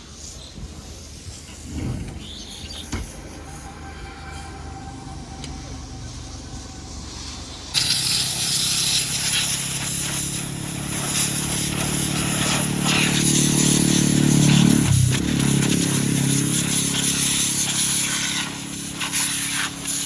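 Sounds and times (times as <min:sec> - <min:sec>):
pressure washer spray hissing: 0:07.2 - 0:20.0.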